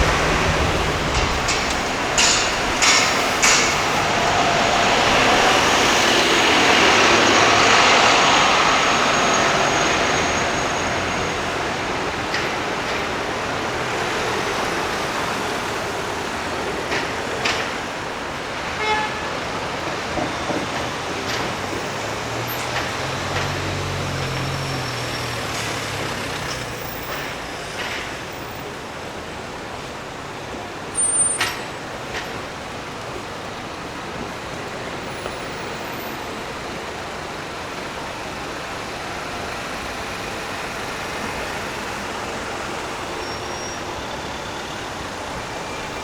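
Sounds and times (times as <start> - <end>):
sharp knocks: 0.0 - 4.7
heavy vehicle engine passing: 0.0 - 18.6, 20.0 - 28.9
city street traffic: 0.0 - 46.0
car horn toot: 18.8 - 19.3.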